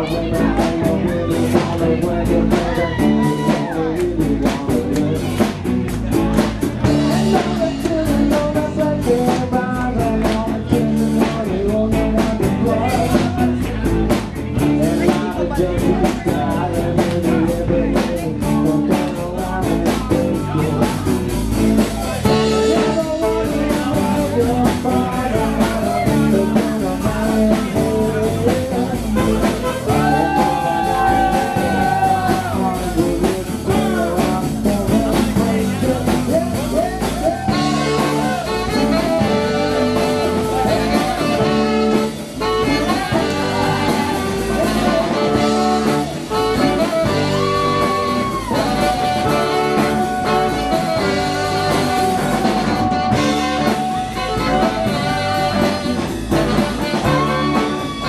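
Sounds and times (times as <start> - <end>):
live rock band playing: 0.0 - 58.0.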